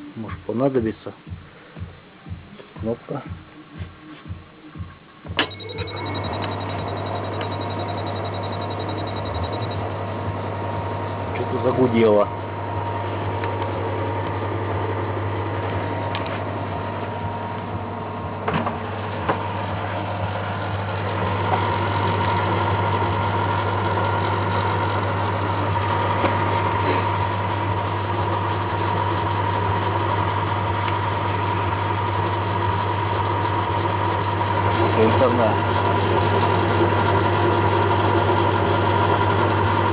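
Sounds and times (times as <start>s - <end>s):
deep mains hum: 0.0s - 39.9s
microwave oven humming: 0.0s - 39.9s
high steady tone: 5.3s - 10.4s.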